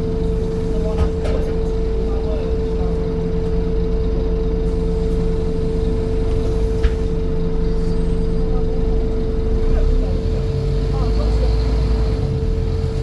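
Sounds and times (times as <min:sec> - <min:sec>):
bus engine and road rumble: 0:00.0 - 0:13.0.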